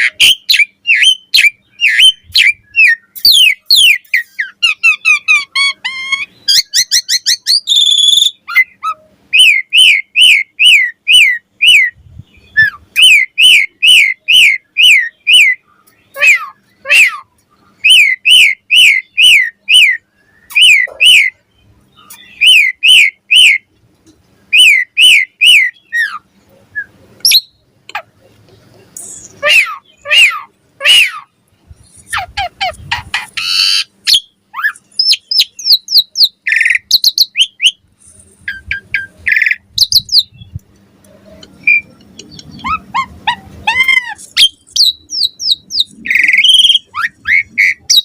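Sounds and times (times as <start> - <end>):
starling whistling: 0.0 - 5.3, 42.5 - 48.0
bird chattering: 0.0 - 23.7, 29.0 - 40.6, 41.2 - 48.0.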